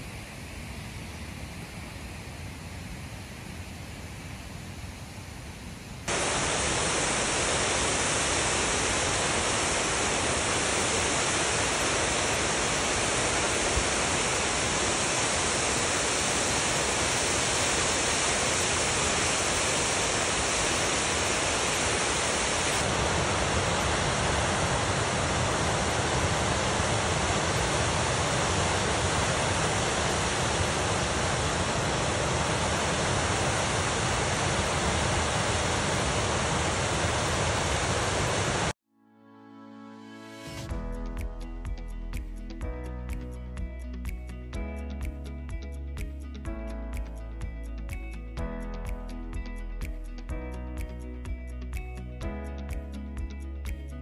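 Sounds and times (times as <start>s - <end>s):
waterfall rushing: 6.1s - 38.8s.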